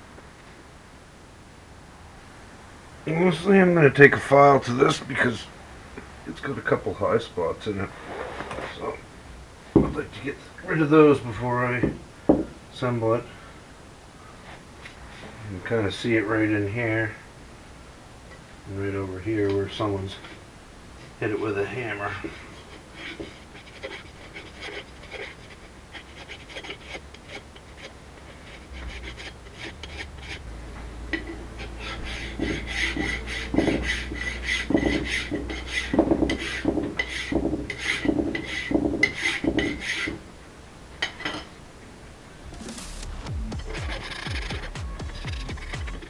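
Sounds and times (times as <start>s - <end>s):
hand file filing metal: 22.1s - 30.4s, 31.5s - 40.2s.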